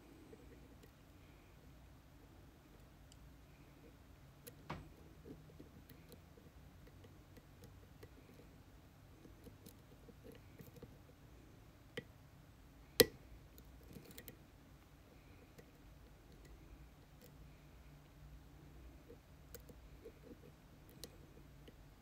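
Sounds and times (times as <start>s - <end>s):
lock picking ticks and scrapes: 13.0s - 14.4s.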